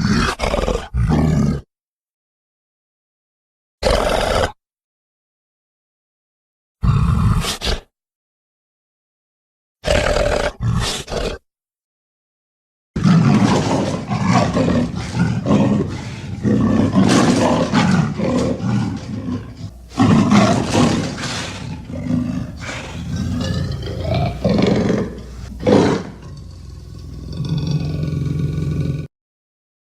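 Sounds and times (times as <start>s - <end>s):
deep growling roars: 13.0s - 29.1s.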